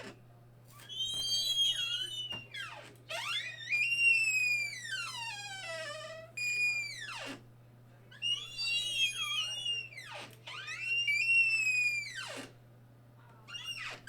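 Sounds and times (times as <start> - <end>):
squeaky door hinges squealing: 0.8 - 7.4, 8.1 - 12.5, 13.5 - 14.0.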